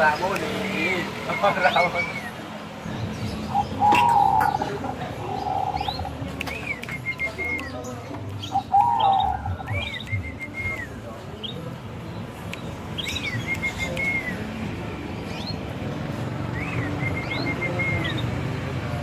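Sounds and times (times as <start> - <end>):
dove cooing: 3.5 - 6.1.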